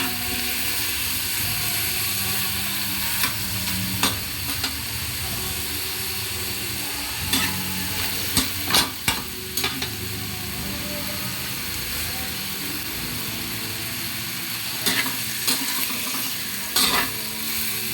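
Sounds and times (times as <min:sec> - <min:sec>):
food sizzling in a pan: 0:00.0 - 0:17.9
spatula scraping a pan: 0:07.2 - 0:09.9, 0:14.8 - 0:17.6.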